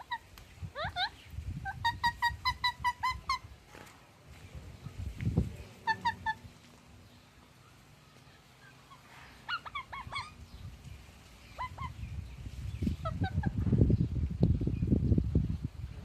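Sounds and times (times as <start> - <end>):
parakeet calling: 5.8 - 6.5, 8.5 - 10.6, 11.4 - 12.2.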